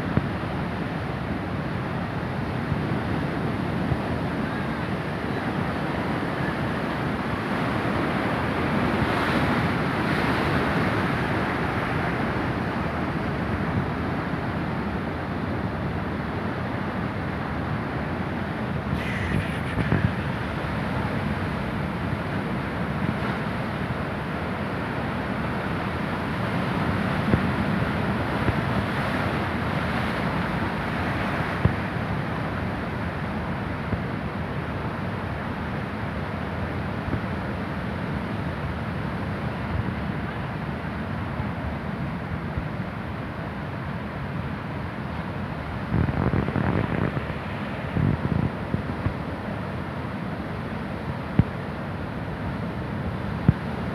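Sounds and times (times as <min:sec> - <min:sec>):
heavy waves breaking: 0:01.7 - 0:35.3, 0:43.2 - 0:53.9
wind on microphone: 0:18.7 - 0:22.7, 0:45.8 - 0:49.3.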